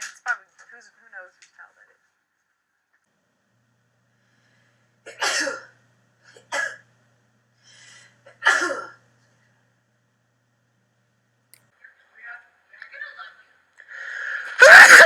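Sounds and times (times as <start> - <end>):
woman sneezing: 14.6 - 15.0.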